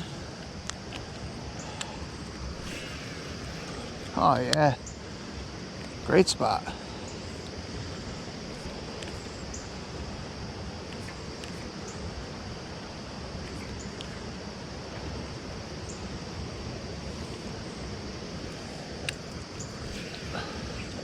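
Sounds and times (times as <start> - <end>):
low rushing noise: 0.0 - 6.2
high insect drone: 0.0 - 21.0.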